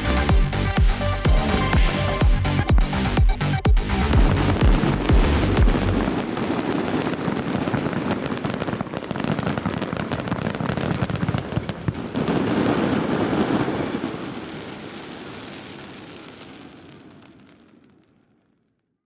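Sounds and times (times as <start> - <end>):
fireworks crackling: 4.2 - 18.1.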